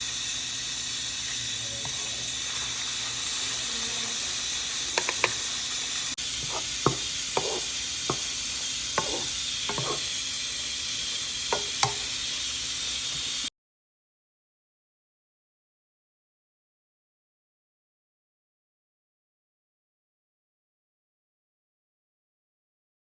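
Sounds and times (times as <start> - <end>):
food sizzling in oil: 0.0 - 13.5
utensil tapping against pan: 5.0 - 5.4, 6.4 - 10.0, 11.5 - 12.1.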